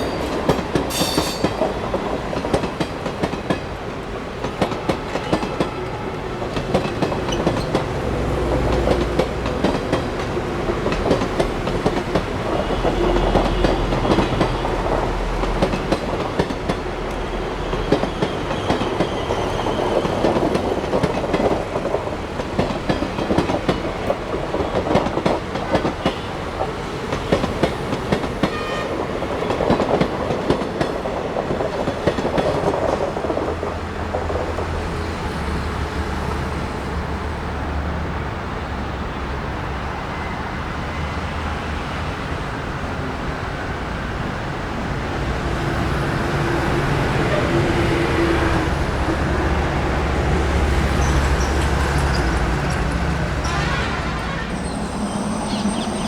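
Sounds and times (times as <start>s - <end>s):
train coaches clattering over rail joints: 0.0s - 37.1s, 44.7s - 56.0s
diesel locomotive engine drone: 31.4s - 56.0s.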